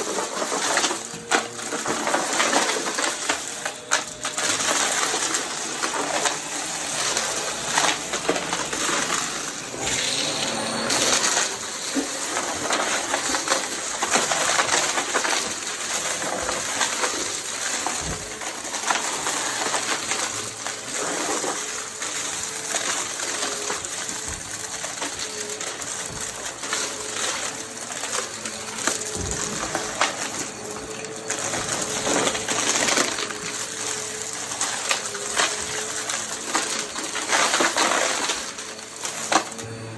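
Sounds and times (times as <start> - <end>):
debris rattling into vacuum: 0.0 - 39.9
vacuum cleaner running: 0.0 - 39.9.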